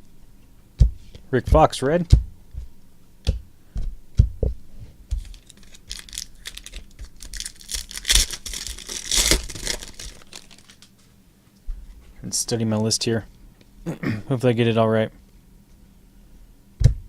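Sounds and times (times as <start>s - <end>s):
foil wrapper crinkling and tearing: 5.2s - 10.9s.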